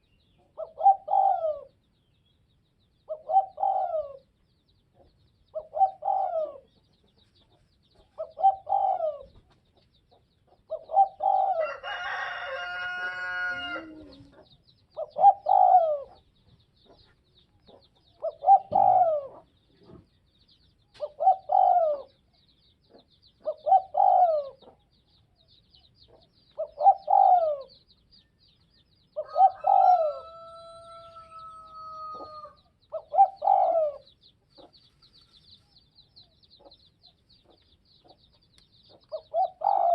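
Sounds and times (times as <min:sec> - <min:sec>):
bird calling: 0:00.0 - 0:01.8, 0:03.0 - 0:04.4, 0:08.0 - 0:09.4, 0:10.7 - 0:20.0, 0:20.9 - 0:22.3, 0:22.9 - 0:24.9, 0:26.1 - 0:27.9, 0:29.2 - 0:38.2, 0:38.9 - 0:39.9
dove cooing: 0:00.4 - 0:01.8, 0:03.1 - 0:04.3, 0:05.5 - 0:06.7, 0:08.2 - 0:09.4, 0:10.6 - 0:16.2, 0:18.2 - 0:20.0, 0:21.0 - 0:22.2, 0:23.4 - 0:24.8, 0:26.5 - 0:27.8, 0:29.2 - 0:34.1, 0:39.1 - 0:39.9.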